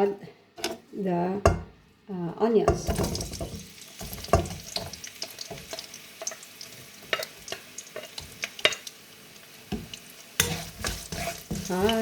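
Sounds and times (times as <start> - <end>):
utensil knocking against pan: 2.7 - 4.9
onions sizzling in oil: 2.8 - 12.0.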